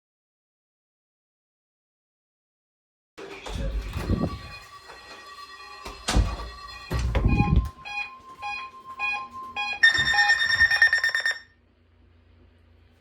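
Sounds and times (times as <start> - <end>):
steady warning tone: 3.4 - 11.6
harsh buzzing alarm tone: 3.8 - 11.6
repeating beeps: 7.1 - 11.5.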